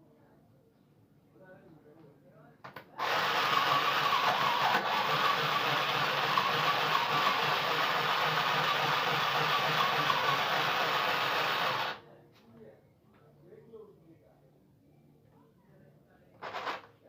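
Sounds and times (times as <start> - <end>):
sewing machine running: 3.0 - 12.0, 16.4 - 16.9.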